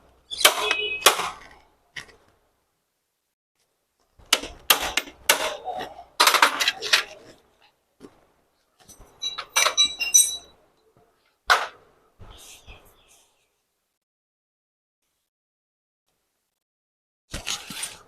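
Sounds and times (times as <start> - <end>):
sharp metal knocks: 0.3 - 1.4, 4.3 - 5.6
metal tools clattering and clinking: 8.8 - 10.6.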